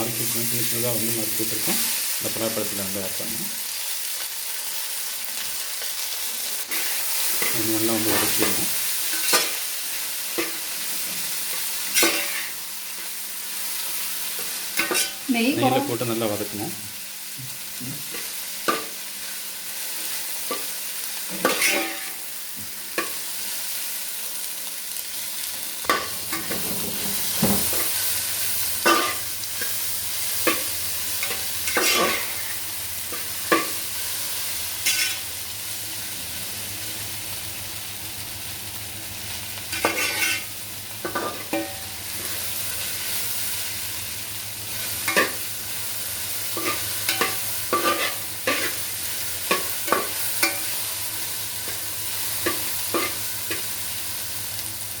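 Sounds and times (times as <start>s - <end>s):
food sizzling in a pan: 0.0s - 55.0s
spatula scraping and knocking pan: 34.8s - 35.2s, 39.7s - 42.4s, 46.6s - 48.8s.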